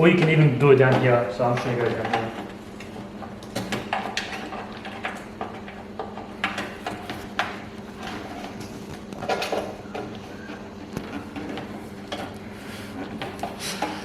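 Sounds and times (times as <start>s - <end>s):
cables clicking and rustling: 0.0s - 14.0s.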